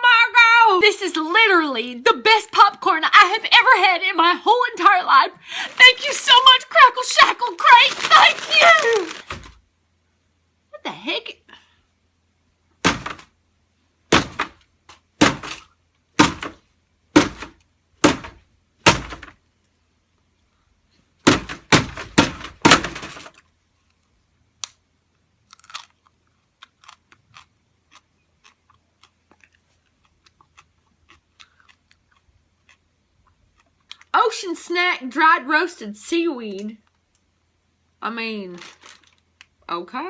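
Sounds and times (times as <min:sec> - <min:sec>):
popcorn being chewed: 0:23.5 - 0:34.1.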